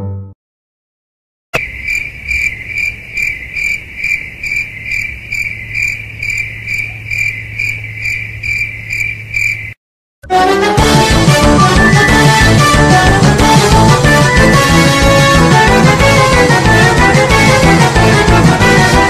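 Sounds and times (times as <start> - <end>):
crickets chirping: 1.6 - 9.8.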